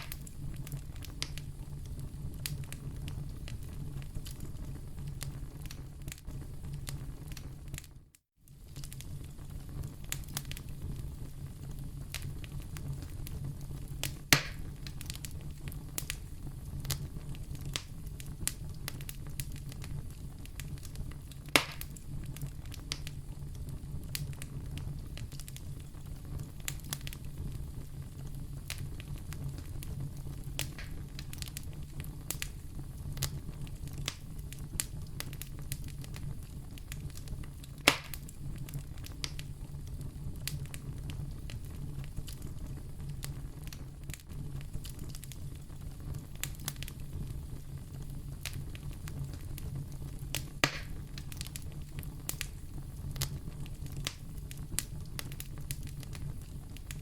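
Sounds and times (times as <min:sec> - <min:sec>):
wood fire crackling: 0:00.0 - 0:57.0
logs popping: 0:14.3 - 0:14.6, 0:21.5 - 0:21.9, 0:37.8 - 0:38.3, 0:50.6 - 0:51.5.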